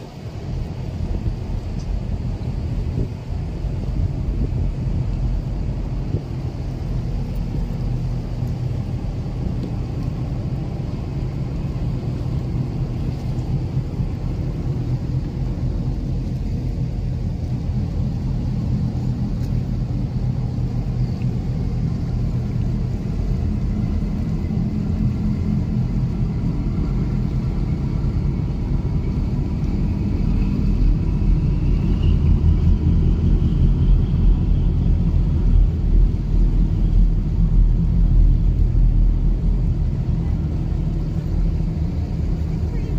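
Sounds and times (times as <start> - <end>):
low engine rumble: 0.0 - 42.9.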